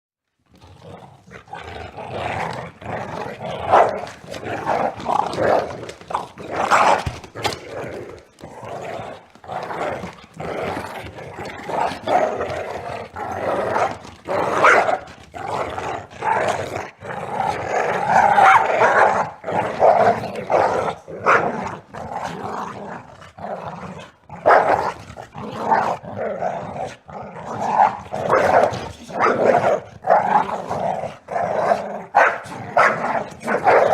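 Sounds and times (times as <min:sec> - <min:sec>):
dogs growling and snarling: 0:00.4 - 0:33.9
dog nails scrabbling on wood: 0:03.6 - 0:16.6, 0:27.5 - 0:30.8
dogs barking: 0:03.7 - 0:04.1, 0:14.6 - 0:15.1, 0:18.2 - 0:21.6, 0:24.4 - 0:24.9, 0:28.2 - 0:30.2, 0:32.1 - 0:33.9.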